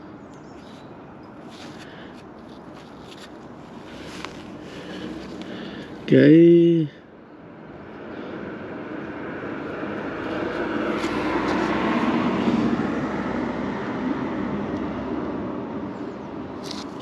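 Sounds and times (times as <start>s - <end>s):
engine passing: 7.9s - 16.9s.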